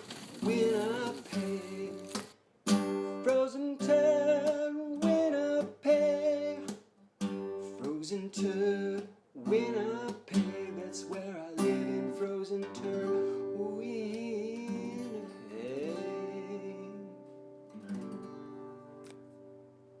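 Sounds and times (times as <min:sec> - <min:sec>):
acoustic guitar strumming: 0:00.0 - 0:20.0
person singing: 0:00.4 - 0:02.3, 0:02.9 - 0:06.8, 0:07.6 - 0:17.4.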